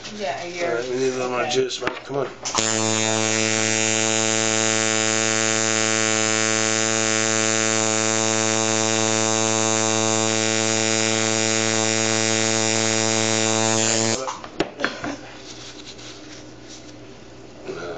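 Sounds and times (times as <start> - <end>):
electric tattoo machine buzzing: 2.6 - 14.3.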